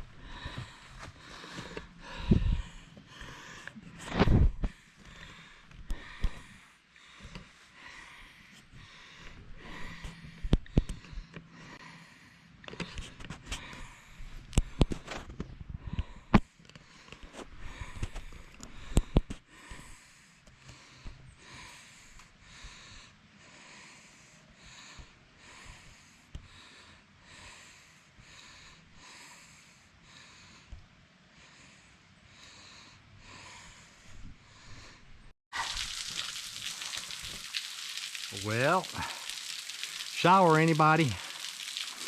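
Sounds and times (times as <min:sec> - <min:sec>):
person breathing hard: 0:00.0 - 0:03.8, 0:04.6 - 0:12.6, 0:15.8 - 0:30.7, 0:31.3 - 0:40.1
small waterfall trickling: 0:35.5 - 0:42.0.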